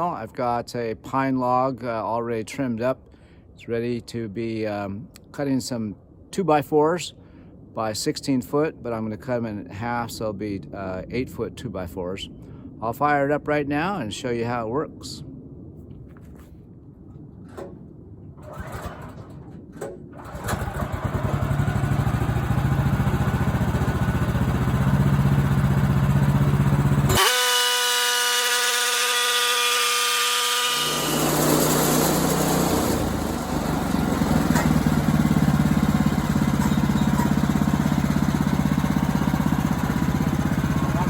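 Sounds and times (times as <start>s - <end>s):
sawmill engine running: 18.4s - 41.0s.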